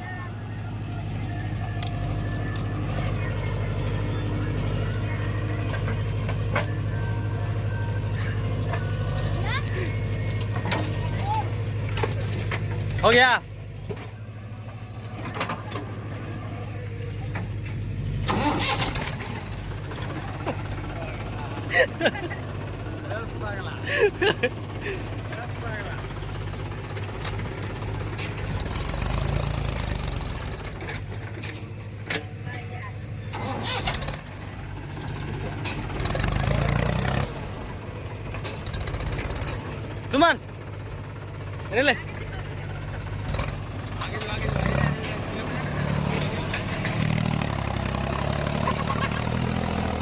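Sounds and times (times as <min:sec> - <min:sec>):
diesel engine running: 0:00.0 - 0:50.0
loud rattling burst: 0:18.2 - 0:19.8.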